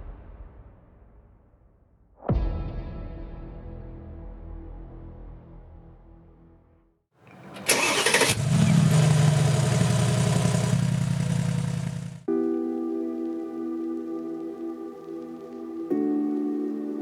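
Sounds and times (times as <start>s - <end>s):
car engine starting and idling: 7.3s - 12.3s.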